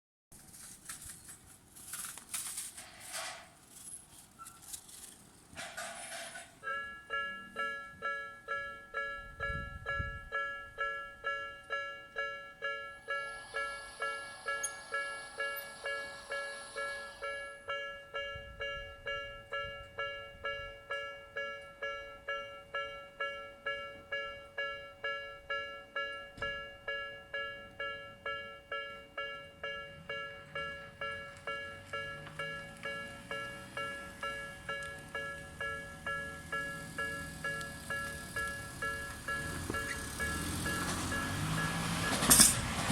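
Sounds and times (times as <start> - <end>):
outdoor rustling and hissing: 0.4 - 6.6
level crossing warning bell: 5.6 - 42.8.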